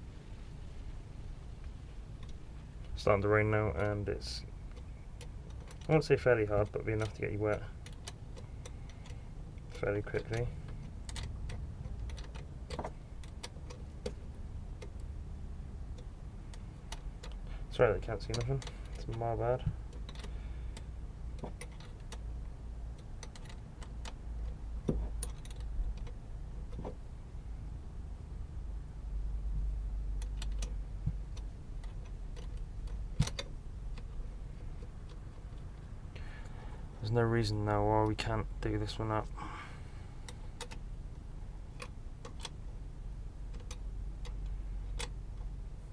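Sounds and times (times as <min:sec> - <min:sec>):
hands clicking battery terminals: 0:15.9 - 0:27.0, 0:30.1 - 0:36.3.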